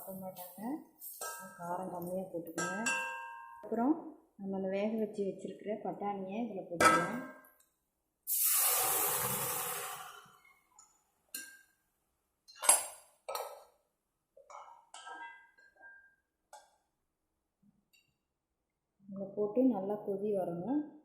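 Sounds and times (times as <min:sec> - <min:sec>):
spoon clinking on metal pan: 0:02.5 - 0:03.6
food sizzling in a hot pan: 0:08.3 - 0:10.3.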